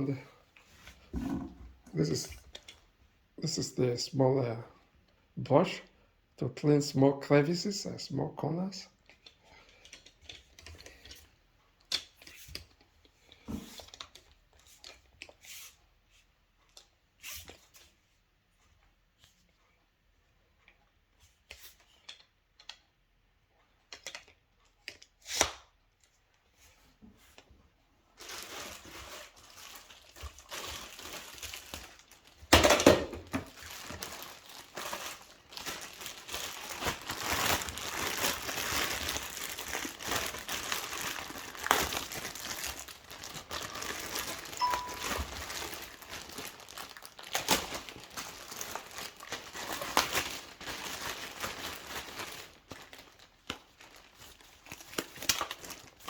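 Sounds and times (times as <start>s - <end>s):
plastic packaging crinkling: 28.1s - 56.0s.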